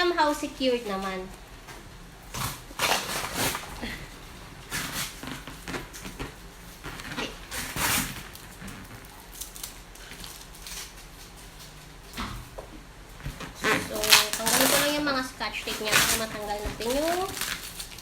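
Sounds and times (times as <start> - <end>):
tape peeled off cardboard box: 2.3 - 3.8, 4.7 - 6.2, 6.8 - 11.5, 13.5 - 15.1, 15.7 - 18.0.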